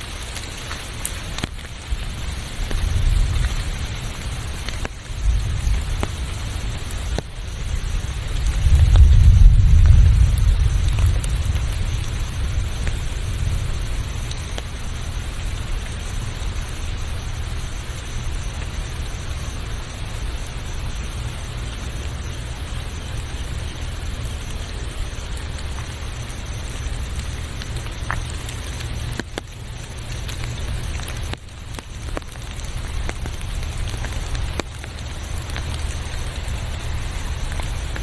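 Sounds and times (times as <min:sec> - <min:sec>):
rain hiss: 0:00.0 - 0:38.0
low rumble: 0:02.0 - 0:16.7.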